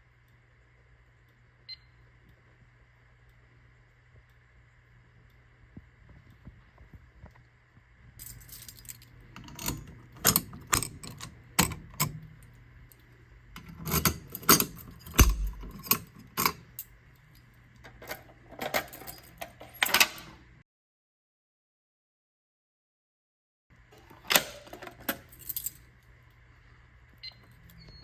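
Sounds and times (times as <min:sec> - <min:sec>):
jingling rattles: 0:08.2 - 0:09.2
sharp metallic clicks: 0:09.4 - 0:16.7.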